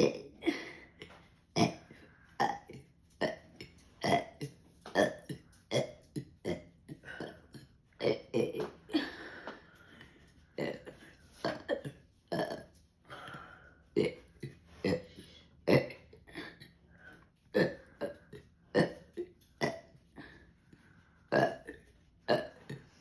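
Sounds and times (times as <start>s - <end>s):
person burping: 0.0s - 9.6s, 10.6s - 16.8s, 17.5s - 20.4s, 21.3s - 23.0s.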